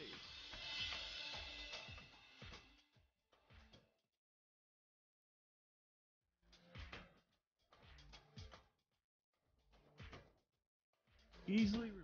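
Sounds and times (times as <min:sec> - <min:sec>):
background music with drum beat: 0:00.0 - 0:03.9, 0:06.5 - 0:08.8, 0:09.6 - 0:10.4, 0:11.0 - 0:12.0.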